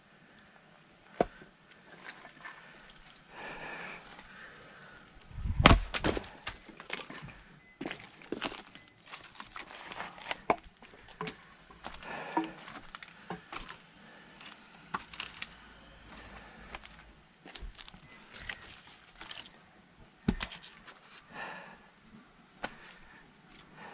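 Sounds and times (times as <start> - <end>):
axe blow splitting log: 5.4 - 6.3.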